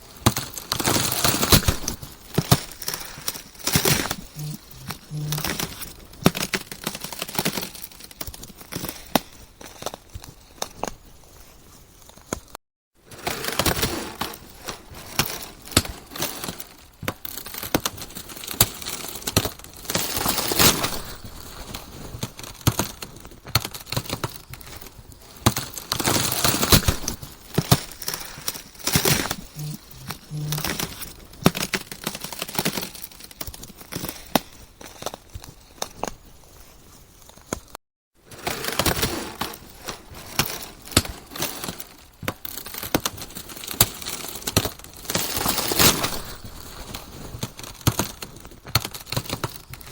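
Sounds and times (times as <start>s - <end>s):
ice cracking: 0.2s - 10.1s, 13.2s - 36.2s.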